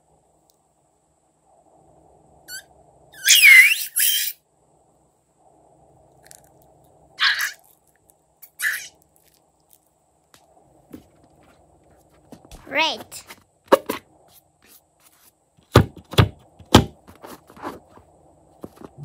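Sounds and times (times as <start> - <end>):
rubber balloon squeaks and whistles: 2.5 - 4.4, 8.5 - 8.9.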